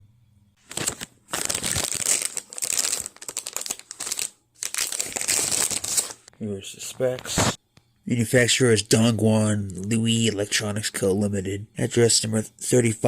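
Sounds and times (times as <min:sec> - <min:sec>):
packaging crinkling and rustling: 0:00.6 - 0:06.3.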